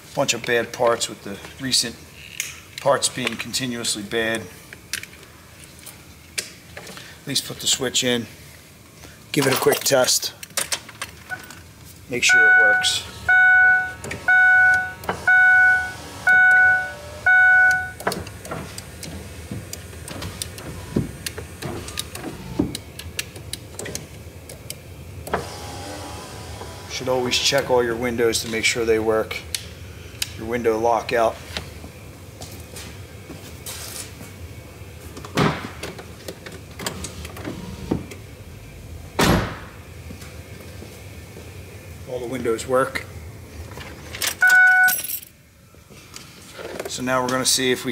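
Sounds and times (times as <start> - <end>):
dashboard warning chime: 12.2 - 18.0, 44.4 - 45.0
power window motor hum: 12.6 - 23.0, 25.2 - 27.8, 36.9 - 39.2.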